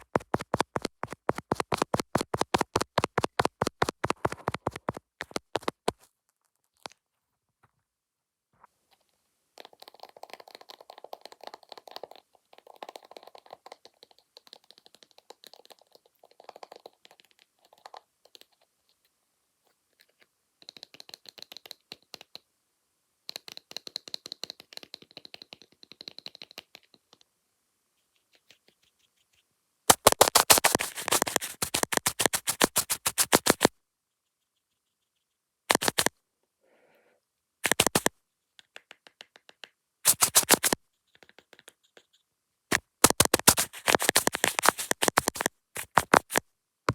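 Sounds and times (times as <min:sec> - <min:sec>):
tapping and scratching on lens: 0:00.0 - 0:07.0, 0:08.6 - 0:19.1, 0:28.0 - 0:36.1, 0:37.6 - 0:46.9.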